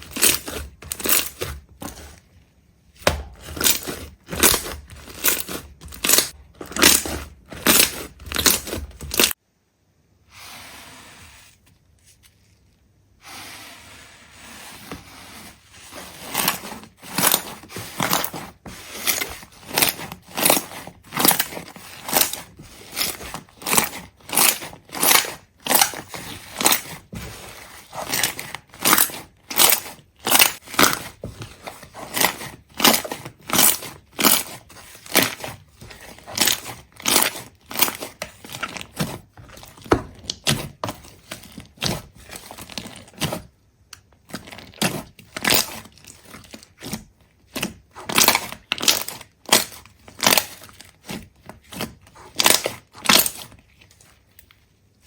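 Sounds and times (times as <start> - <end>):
crunchy material being crushed: 0.0 - 2.2, 3.0 - 9.4, 15.8 - 43.6, 44.2 - 54.3
soft handling sound: 10.2 - 48.2.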